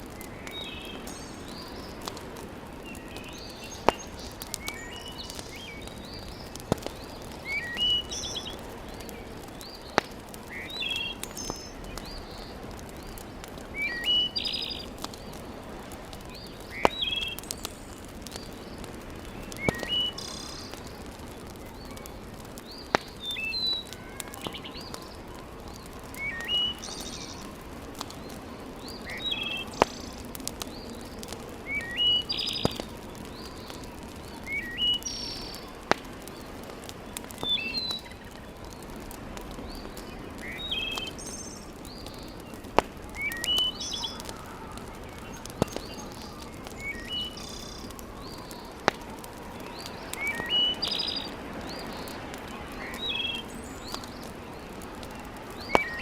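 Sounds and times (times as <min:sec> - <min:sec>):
sharp pops of fire: 0:00.0 - 0:56.0
wood fire crackling: 0:00.0 - 0:56.0.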